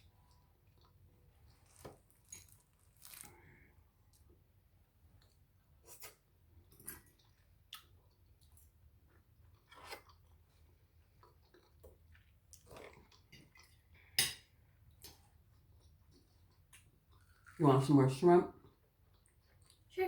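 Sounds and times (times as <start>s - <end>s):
close chewing: 0.3s - 4.3s, 5.2s - 14.0s, 15.0s - 17.6s, 18.5s - 19.9s
crab shell crunching and cracking: 1.6s - 3.5s.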